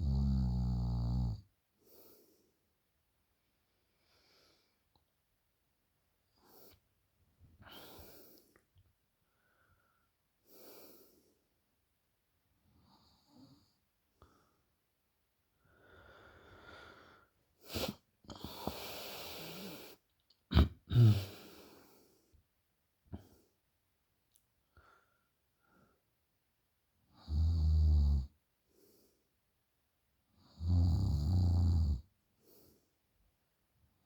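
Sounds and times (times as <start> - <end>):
woman snoring: 0.0 - 1.4, 20.5 - 21.5, 27.2 - 28.3, 30.5 - 32.0.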